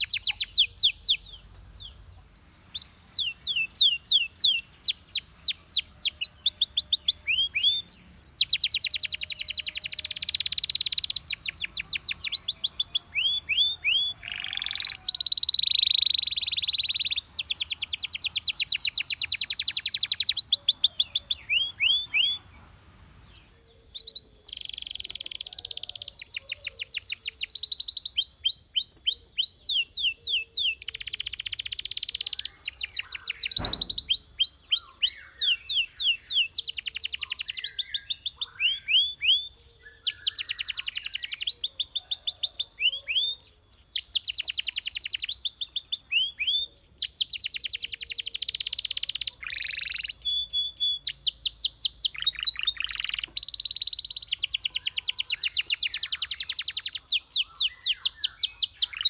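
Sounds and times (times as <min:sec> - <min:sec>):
canary singing trills: 0:00.0 - 0:59.0
low knock: 0:33.6 - 0:34.2.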